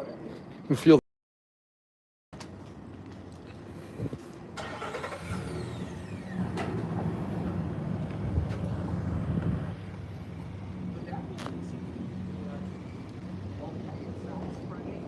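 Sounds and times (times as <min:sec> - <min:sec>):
vehicle engine droning: 0:03.6 - 0:15.0.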